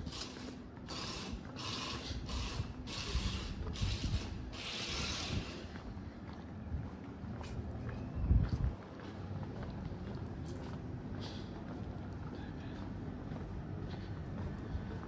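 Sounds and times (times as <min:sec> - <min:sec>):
rasping scraping strokes: 0:00.0 - 0:05.7.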